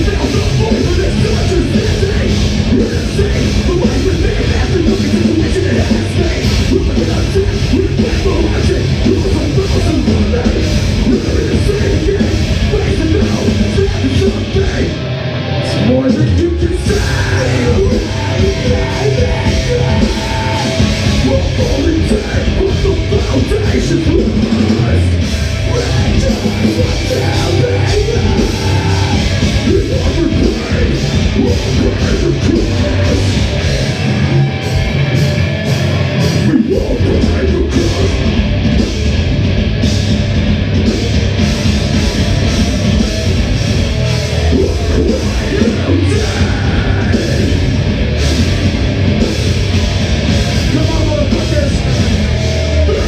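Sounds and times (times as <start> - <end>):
heavy rock band playing: 0.0 - 53.0.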